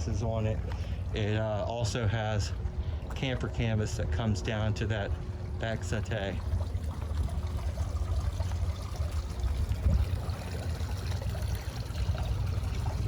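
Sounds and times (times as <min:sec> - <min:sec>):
water trickling and lapping: 0:00.0 - 0:13.0.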